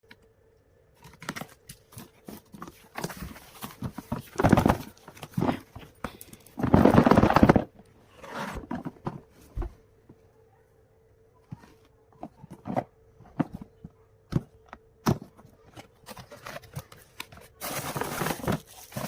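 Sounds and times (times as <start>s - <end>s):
rustling: 16.0s - 19.0s.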